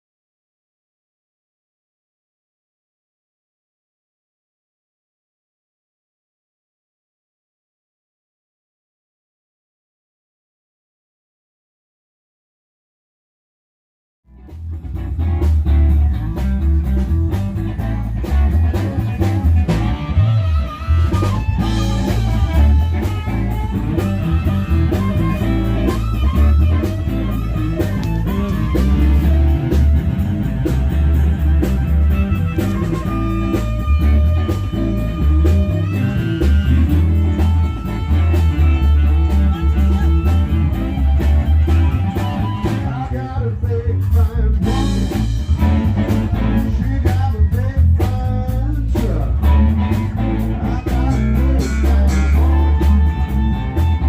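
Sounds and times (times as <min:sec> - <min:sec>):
guitar: 0:14.3 - 0:54.0
heavy bass line: 0:14.3 - 0:54.0
live band playing blues: 0:14.3 - 0:54.0.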